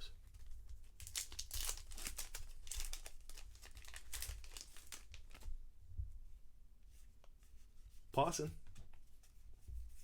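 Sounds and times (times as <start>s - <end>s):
foil wrapper crinkling and tearing: 1.0s - 5.5s.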